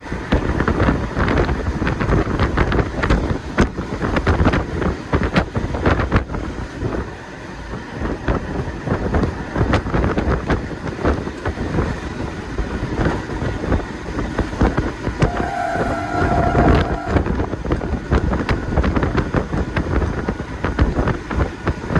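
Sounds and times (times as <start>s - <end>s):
train rattling and clattering: 0.0s - 21.9s
wind buffeting microphone: 0.0s - 21.9s
steady pitched tone: 15.2s - 17.4s.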